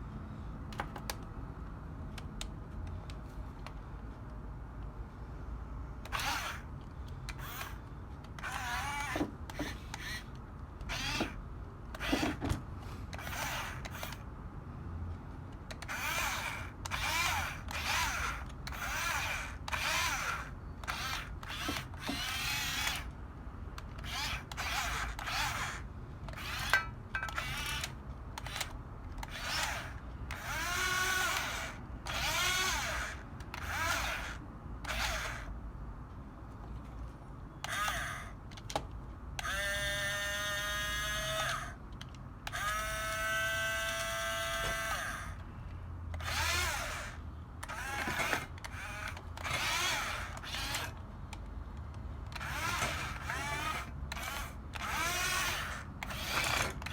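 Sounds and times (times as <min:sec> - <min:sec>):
small electric motors whining: 0:06.0 - 0:06.7, 0:07.3 - 0:14.2, 0:15.7 - 0:23.1, 0:23.9 - 0:35.5, 0:37.6 - 0:38.4, 0:39.4 - 0:41.8, 0:42.4 - 0:45.4, 0:46.2 - 0:51.0, 0:52.3 - 0:56.9.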